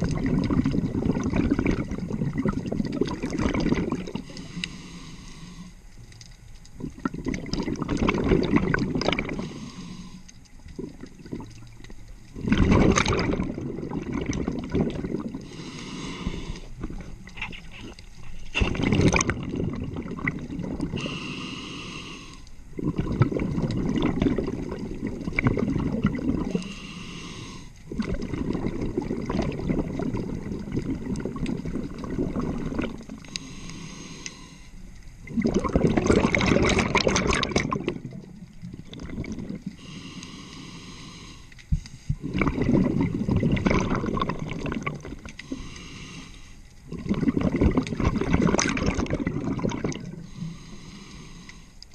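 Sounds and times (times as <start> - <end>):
exhaled bubbles burbling: 0.0 - 4.7, 6.7 - 33.6, 35.1 - 40.4, 41.7 - 45.8, 46.8 - 50.6
diver inhaling through regulator: 4.2 - 5.8, 9.1 - 10.4, 15.1 - 17.1, 20.6 - 23.3, 26.3 - 27.9, 32.4 - 34.8, 39.2 - 43.4, 45.2 - 46.8, 49.3 - 51.9.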